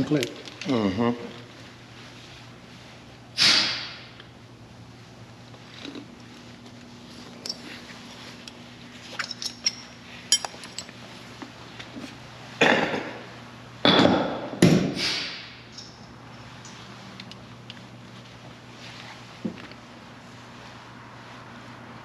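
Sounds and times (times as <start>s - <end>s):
low electrical hum: 0.0s - 22.0s
hand tools clinking on metal: 9.1s - 11.0s.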